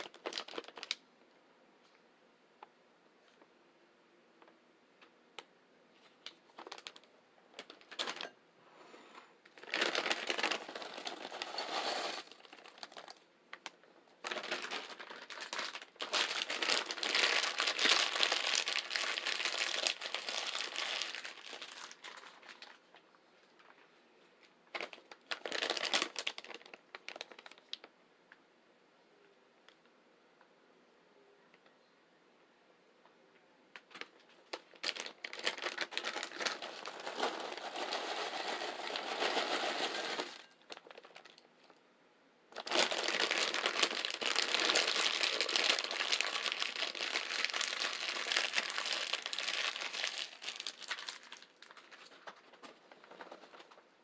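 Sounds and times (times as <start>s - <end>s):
food packaging crinkling: 0.0s - 1.0s, 6.2s - 8.4s, 9.4s - 23.0s, 24.7s - 27.9s, 33.8s - 41.8s, 42.5s - 54.0s.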